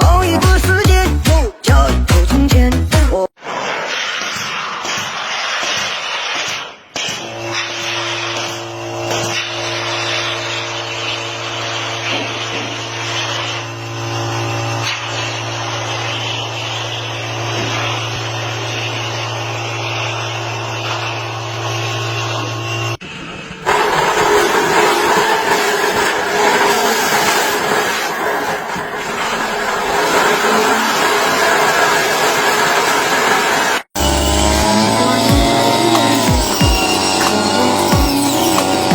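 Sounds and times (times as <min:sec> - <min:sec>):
motor-driven machine humming: 0:34.0 - 0:38.9.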